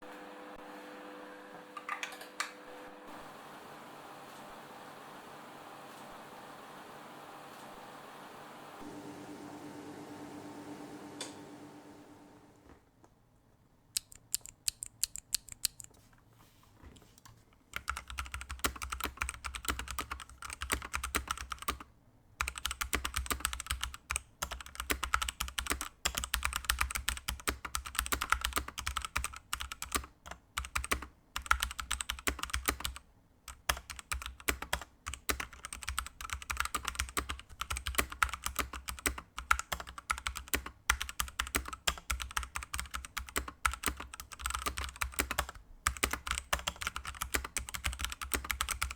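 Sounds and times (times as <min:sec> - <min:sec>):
typing on mechanical keyboard: 0:14.0 - 0:15.9, 0:17.7 - 0:48.9.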